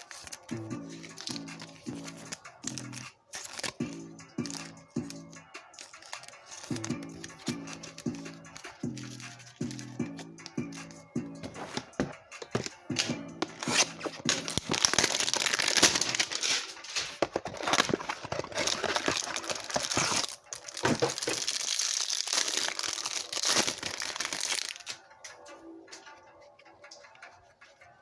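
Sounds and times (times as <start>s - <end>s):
plastic wrapper crinkling and tearing: 0.0s - 9.9s, 13.4s - 25.0s.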